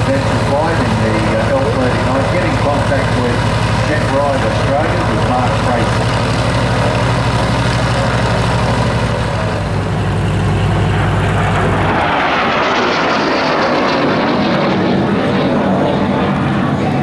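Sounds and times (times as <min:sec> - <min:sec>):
aircraft rushing sound: 0:00.0 - 0:17.0
low engine hum: 0:00.0 - 0:17.0.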